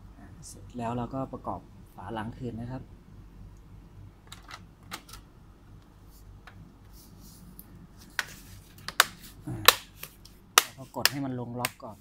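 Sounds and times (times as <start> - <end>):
laptop cover clicks and taps: 8.2 - 11.8
plastic snap: 8.2 - 11.8.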